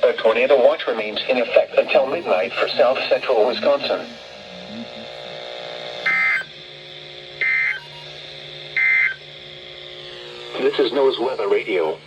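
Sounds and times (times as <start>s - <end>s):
radio hiss: 0.0s - 6.4s, 9.7s - 12.0s
buzzy digital chirps: 6.0s - 6.5s.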